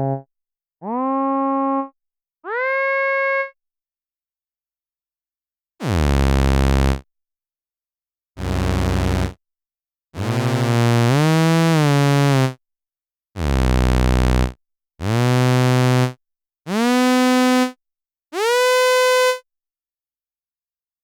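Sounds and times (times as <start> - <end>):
bass synthesizer notes sliding: 0.0 - 0.2.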